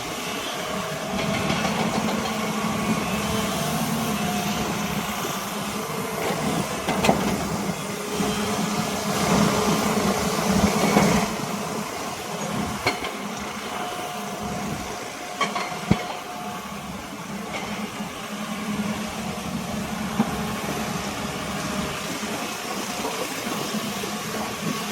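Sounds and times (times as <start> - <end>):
excavator diesel engine running: 0.0 - 24.9.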